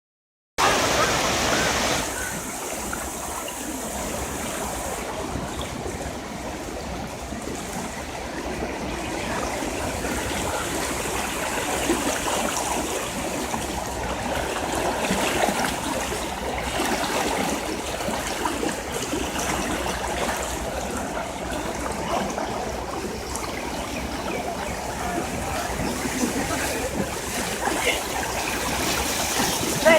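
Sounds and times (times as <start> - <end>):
floodwater flowing: 0.6 - 29.9.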